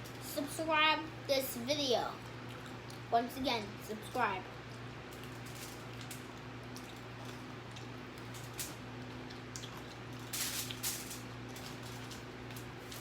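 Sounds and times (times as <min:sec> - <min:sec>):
steady low hum: 0:00.0 - 0:13.0
chewing food: 0:02.1 - 0:03.7, 0:04.5 - 0:13.0.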